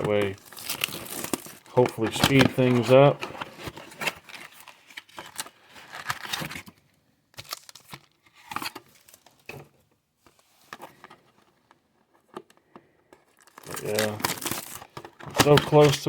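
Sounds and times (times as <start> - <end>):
cardboard and wrapping tearing: 0.0 - 6.8, 7.4 - 9.4, 13.3 - 16.0.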